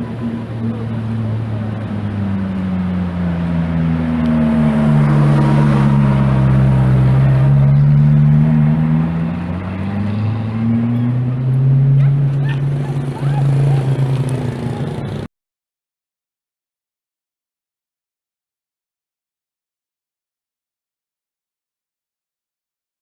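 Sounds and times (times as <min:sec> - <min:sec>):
car engine cruising at low revs: 0:00.0 - 0:15.3.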